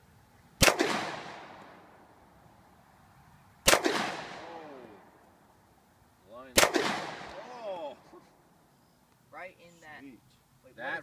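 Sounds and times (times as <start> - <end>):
pistol shots with echo: 0.6 - 1.9, 3.6 - 5.0, 6.6 - 7.4.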